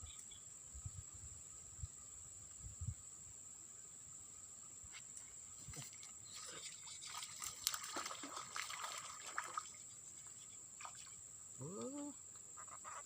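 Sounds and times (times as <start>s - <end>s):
insects droning: 0.0s - 13.0s
water splashing and trickling: 5.6s - 12.1s.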